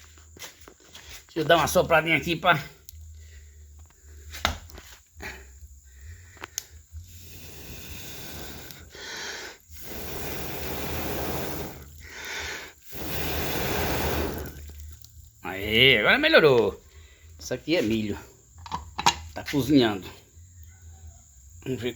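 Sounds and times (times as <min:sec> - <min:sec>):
person blowing on fire: 0:02.9 - 0:15.1.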